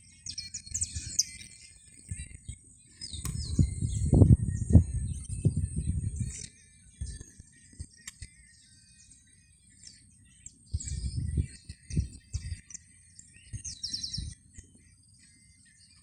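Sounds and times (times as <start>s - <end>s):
small birds chirping: 0.0s - 16.0s
low thumps and rustles: 3.2s - 6.3s.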